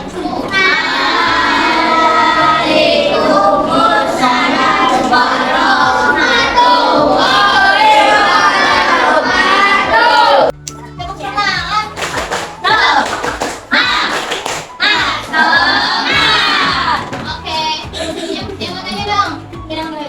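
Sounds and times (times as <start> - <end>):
group singing in chorus: 0.0 - 10.6, 14.9 - 17.1.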